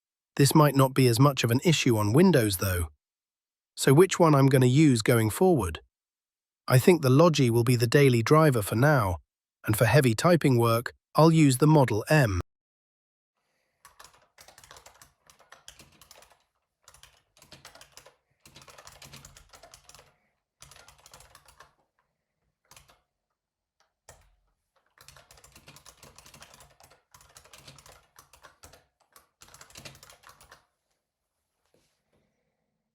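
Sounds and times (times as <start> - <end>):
typing on computer keyboard: 13.8 - 22.0, 22.6 - 23.1, 23.8 - 30.7.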